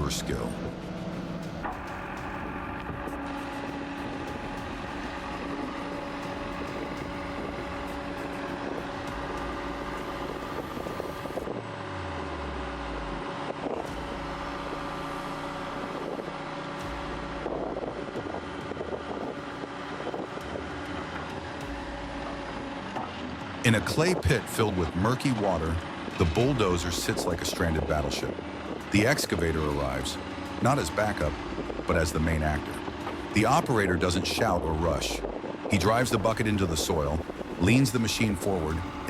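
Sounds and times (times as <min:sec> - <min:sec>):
diesel engines running: 0:00.0 - 0:39.0.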